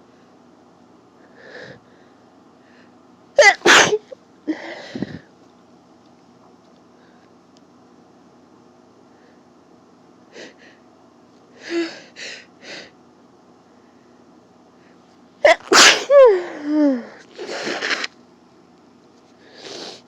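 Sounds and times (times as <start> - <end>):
noisy breath: 1.2 - 3.0, 4.5 - 5.3, 9.0 - 9.6, 19.3 - 20.0
person sneezing loudly: 3.4 - 4.1, 15.4 - 16.4.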